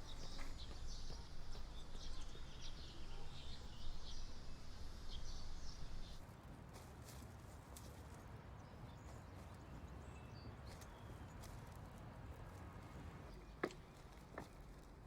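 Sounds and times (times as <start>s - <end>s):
small birds chirping: 0.0s - 6.2s.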